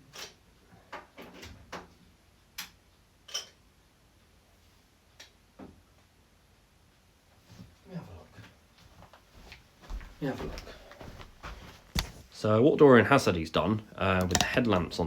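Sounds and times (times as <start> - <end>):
vacuum cleaner being handled: 12.0 - 12.2, 14.2 - 14.6.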